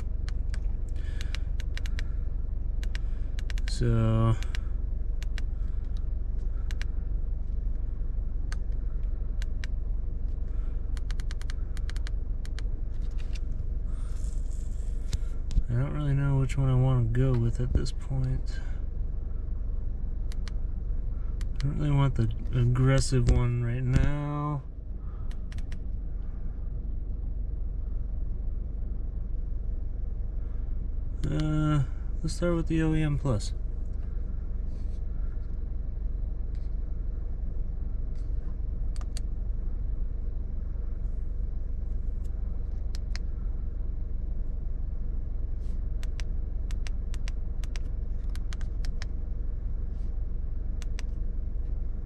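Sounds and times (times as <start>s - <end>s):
short clicks: 0.0s - 2.1s, 2.8s - 6.9s, 25.3s - 25.8s, 38.9s - 39.3s, 46.0s - 49.1s
car engine idling: 0.0s - 52.0s.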